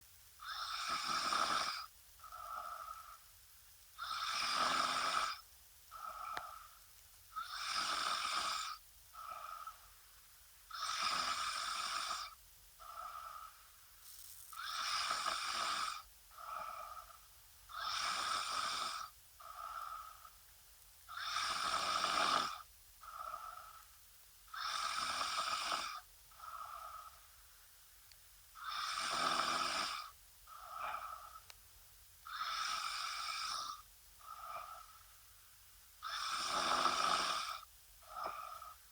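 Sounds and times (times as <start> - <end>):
woman snoring: 0.4 - 3.2, 4.0 - 6.7, 7.4 - 9.8, 10.7 - 13.6, 14.6 - 20.3, 21.1 - 23.8, 24.5 - 27.2, 28.6 - 31.5, 32.3 - 35.0, 36.0 - 38.8.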